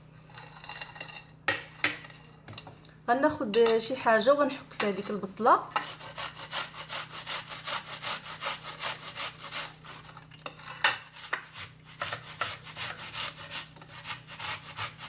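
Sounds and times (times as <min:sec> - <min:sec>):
onion rasping on grater: 0:05.8 - 0:15.0.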